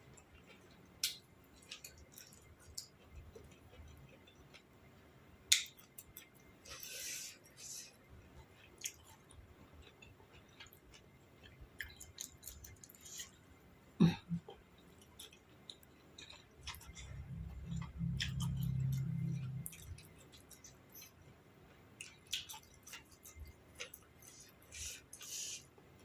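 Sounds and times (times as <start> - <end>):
person chewing crunchy food: 0.1 - 4.7, 5.5 - 13.5, 14.7 - 21.2, 22.0 - 25.7
low hum: 16.7 - 20.6.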